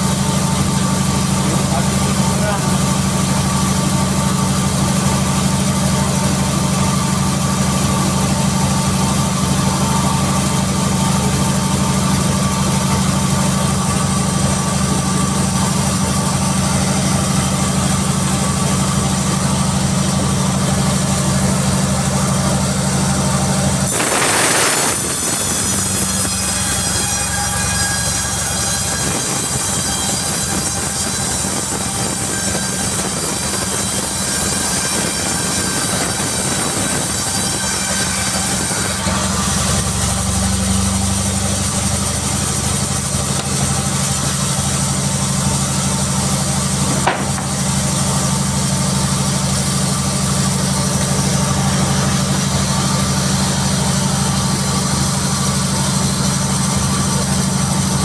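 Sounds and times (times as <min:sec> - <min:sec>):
sawmill machinery humming: 0:00.0 - 0:58.0
high many-toned whine: 0:08.3 - 0:55.3
loud rushing burst: 0:23.9 - 0:25.8.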